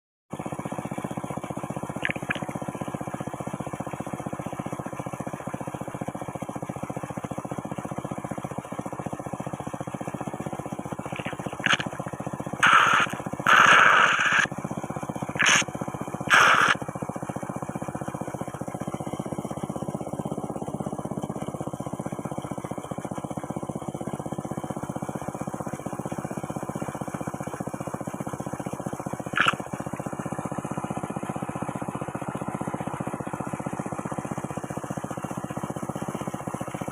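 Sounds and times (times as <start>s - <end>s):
water whirlpool churning: 0.4s - 24.6s
water slurping: 1.4s - 2.8s, 10.2s - 16.9s, 29.1s - 30.9s.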